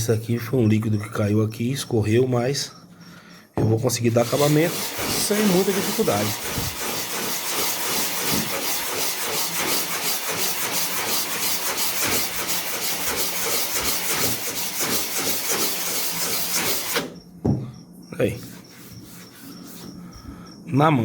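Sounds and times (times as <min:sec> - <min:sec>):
sandpaper rubbing on fibreglass: 0:04.1 - 0:17.2, 0:18.4 - 0:20.0.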